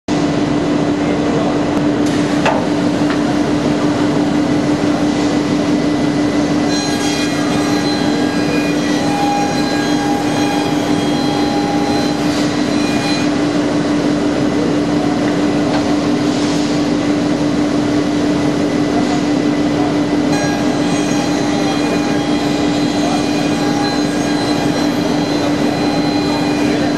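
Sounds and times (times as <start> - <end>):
high whining tones: 5.8 - 13.9
saw machine cutting wood: 6.5 - 13.6, 20.3 - 26.9.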